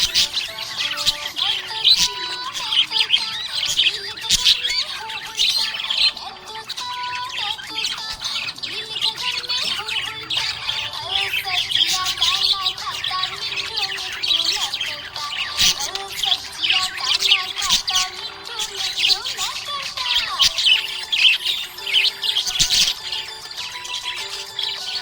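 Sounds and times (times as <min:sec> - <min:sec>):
budgerigars chirping and warbling: 0:00.0 - 0:25.0
melody of held notes: 0:18.0 - 0:25.0.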